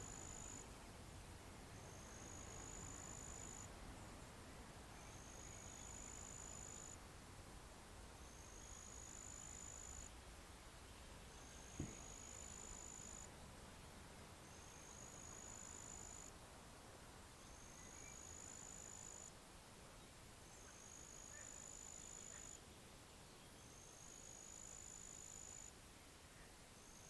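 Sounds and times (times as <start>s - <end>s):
faint background hiss: 0.0s - 27.0s.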